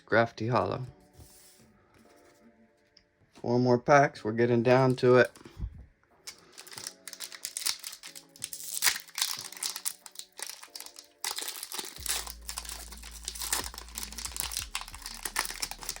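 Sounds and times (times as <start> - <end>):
foil wrapper crinkling and tearing: 6.3 - 16.0.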